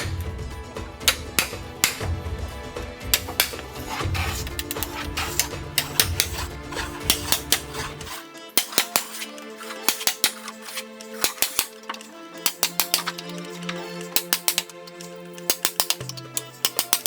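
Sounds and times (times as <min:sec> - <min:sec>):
mallet striking chisel: 0:00.0 - 0:00.4, 0:01.0 - 0:02.3, 0:03.0 - 0:17.0
background music: 0:00.0 - 0:17.0.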